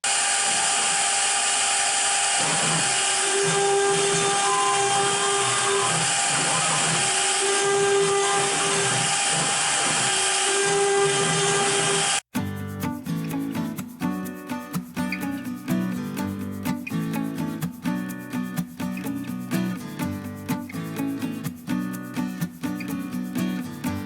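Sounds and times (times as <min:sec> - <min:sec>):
router spindle cutting wood: 0:00.1 - 0:12.2.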